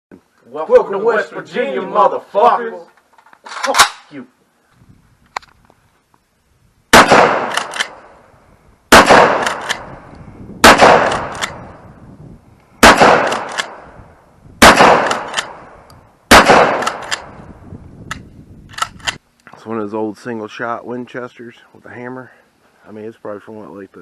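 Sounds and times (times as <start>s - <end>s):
gunshots: 6.9s - 8.0s, 8.9s - 9.9s, 10.6s - 11.7s, 12.8s - 13.9s, 14.6s - 15.7s, 16.3s - 17.4s.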